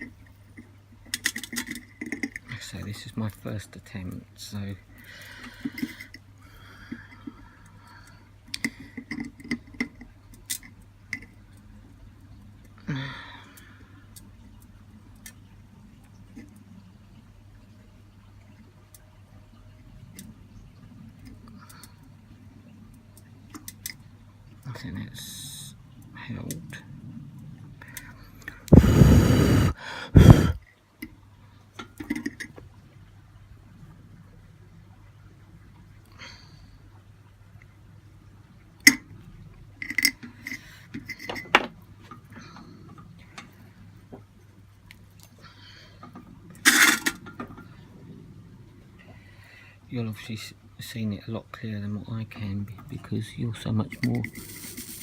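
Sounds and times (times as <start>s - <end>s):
faint low hum: 0.0s - 55.0s
hard exhaled breaths: 5.0s - 9.0s, 27.8s - 30.6s.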